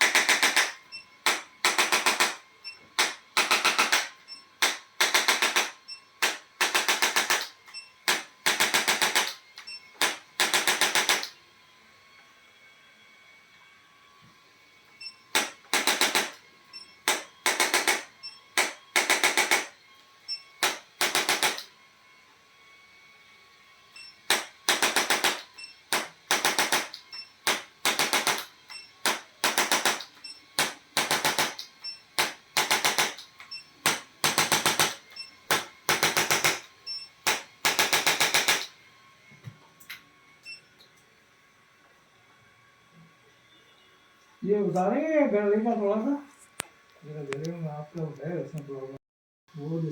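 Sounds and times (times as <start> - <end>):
rapid mechanical tapping: 3.0 - 9.4, 24.3 - 38.7.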